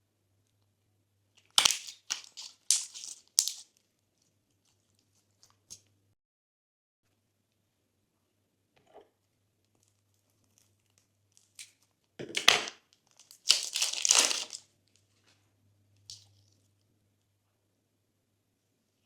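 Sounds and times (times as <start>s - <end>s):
slime squishing: 13.1s - 14.6s.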